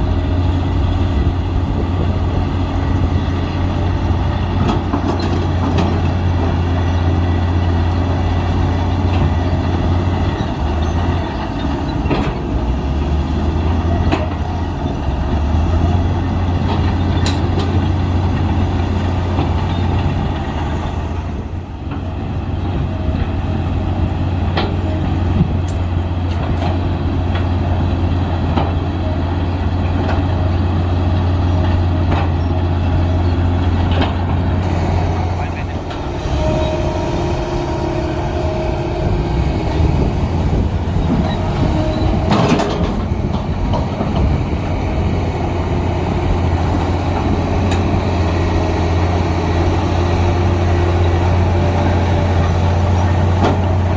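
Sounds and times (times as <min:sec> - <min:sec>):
bulldozer diesel engine running: 0:00.0 - 0:53.9
metallic clanks and knocks: 0:41.0 - 0:44.4.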